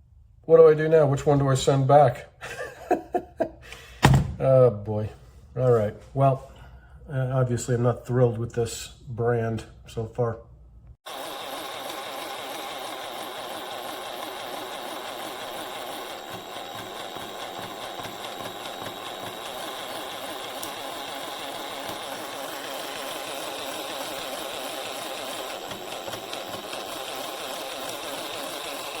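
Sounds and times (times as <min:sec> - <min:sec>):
jigsaw motor buzzing: 0:11.0 - 0:29.0.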